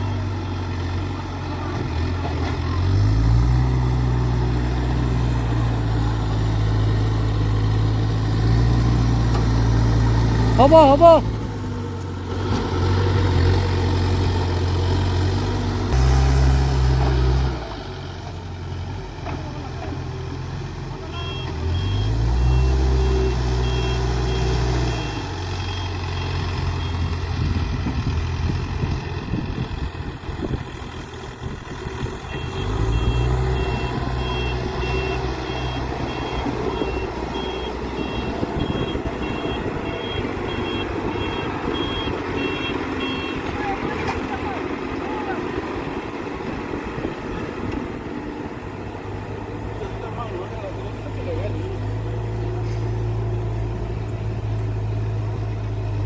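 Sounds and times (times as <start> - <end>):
diesel engine revving: 0.0 - 56.0
reversing alarm beeping: 21.2 - 27.1, 32.3 - 43.4.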